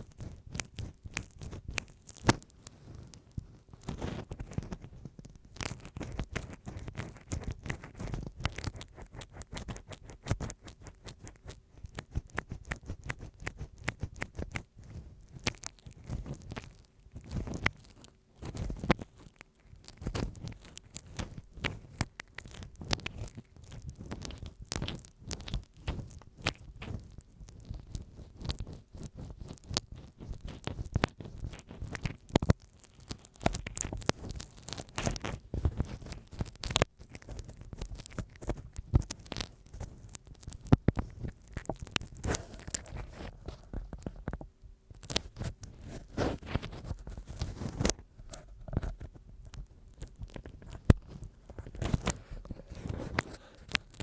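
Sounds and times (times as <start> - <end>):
ear pick scratching tape: 33.3 - 44.2.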